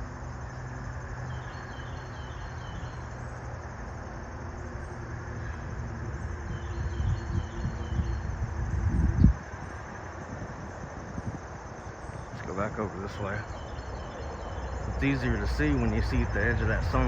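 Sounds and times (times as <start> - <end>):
wind buffeting microphone: 5.6 - 17.0
steady low rumble: 6.1 - 17.0
high falling chirps: 12.5 - 17.0.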